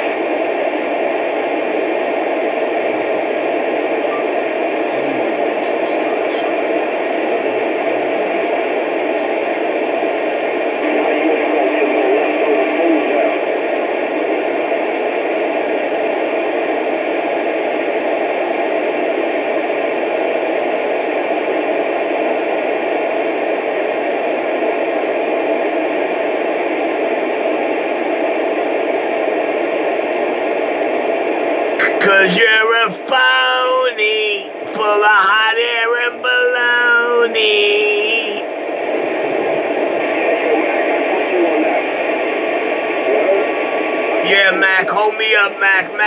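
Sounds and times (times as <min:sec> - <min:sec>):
radio static hiss: 0:00.0 - 0:15.7, 0:25.7 - 0:46.0.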